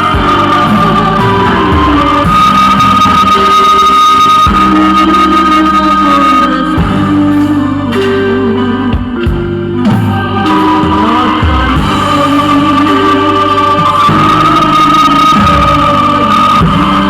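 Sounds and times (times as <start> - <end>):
music with long held notes: 0.0 - 17.0
steady bass: 0.0 - 17.0.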